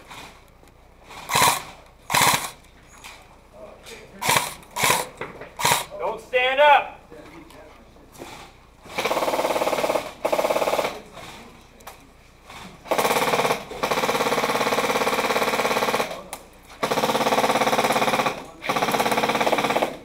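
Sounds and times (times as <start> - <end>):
airsoft rifle firing full auto: 1.3 - 2.6, 4.2 - 5.9, 9.0 - 11.0, 12.9 - 20.0.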